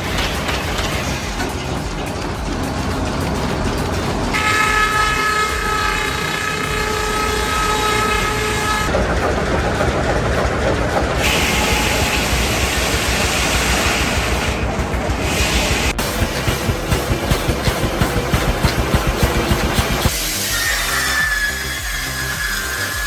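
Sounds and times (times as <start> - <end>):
engine rumble: 0.0 - 20.5
horn chord: 4.3 - 9.0
harsh hiss: 11.2 - 23.0.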